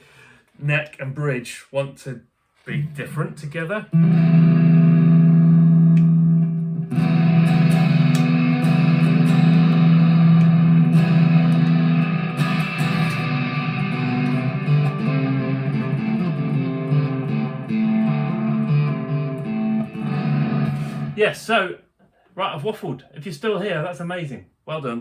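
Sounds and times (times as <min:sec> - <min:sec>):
electric guitar through amplifier: 0:03.9 - 0:21.3.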